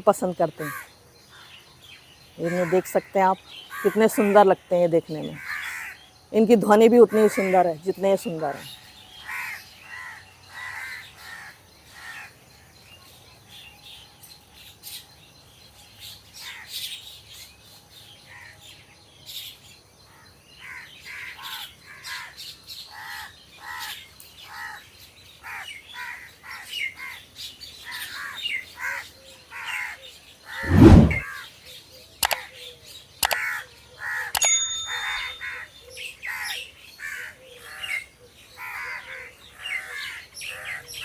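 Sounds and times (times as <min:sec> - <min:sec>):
crows cawing: 0:03.7 - 0:04.3, 0:05.4 - 0:06.0, 0:09.2 - 0:12.3, 0:38.6 - 0:40.8.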